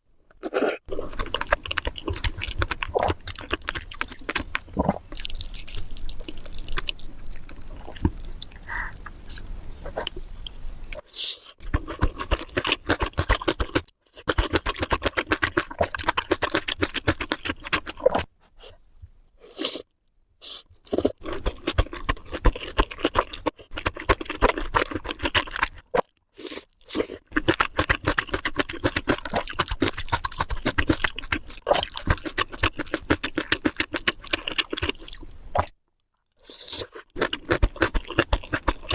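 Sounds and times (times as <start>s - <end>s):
crunchy chewing: 0.4s - 10.5s, 19.5s - 35.8s, 36.4s - 38.9s.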